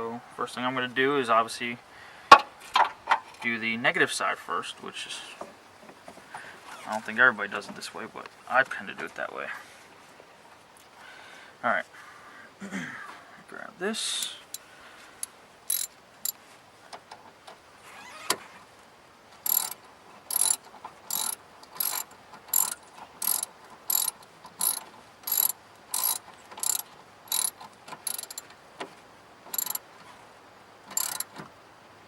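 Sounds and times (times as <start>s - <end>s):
hand ratchet ratcheting: 14.2s - 14.6s, 15.2s - 16.4s, 19.4s - 28.5s, 29.5s - 29.8s, 30.9s - 31.4s.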